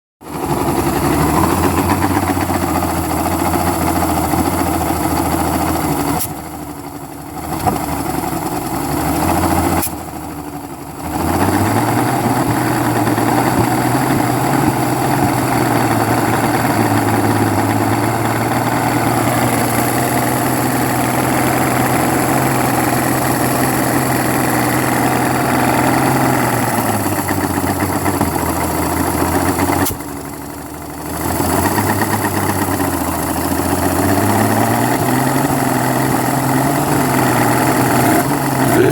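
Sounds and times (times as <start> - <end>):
outboard engine idling and coughing: 0.3 - 30.8, 35.6 - 38.9
engine backfires: 0.3 - 38.9.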